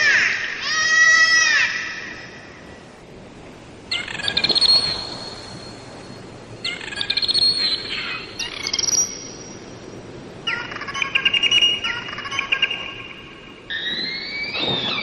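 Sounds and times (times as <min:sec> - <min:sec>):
dolphins whistling: 0:10.4 - 0:15.0.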